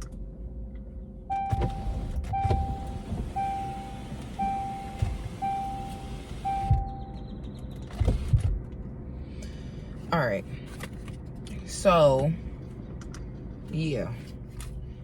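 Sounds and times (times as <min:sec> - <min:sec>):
electronic beeper tone: 0:01.3 - 0:07.4.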